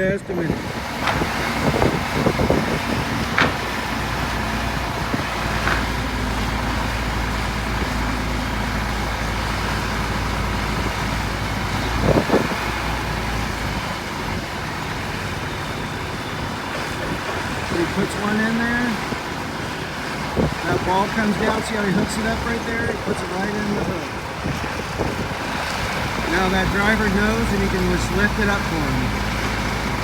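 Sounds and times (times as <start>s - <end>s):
wind on microphone: 0.0s - 15.3s, 16.0s - 27.0s
truck engine running: 0.0s - 30.0s
short knocks: 0.9s - 6.8s.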